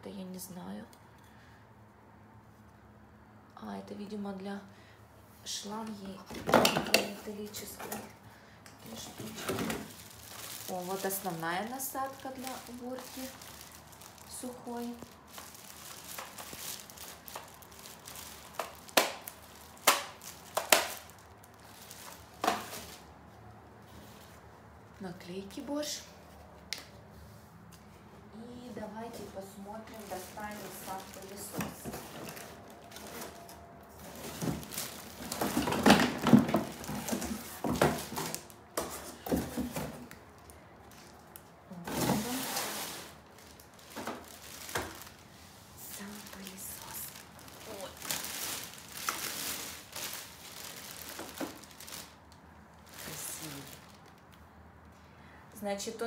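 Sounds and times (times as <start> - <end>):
packaging rustling: 8.8 - 23.3, 29.2 - 54.4.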